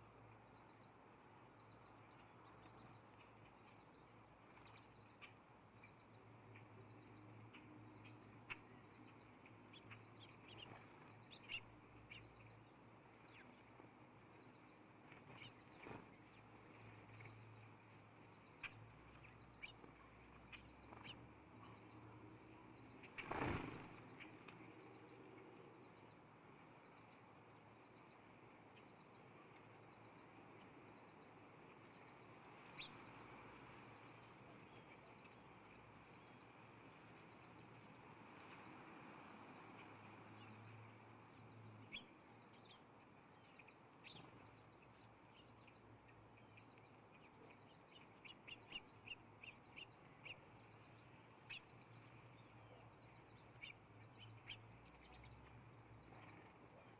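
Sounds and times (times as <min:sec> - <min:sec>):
birds chirping: 0:00.1 - 0:56.9
wings flapping: 0:23.0 - 0:24.6.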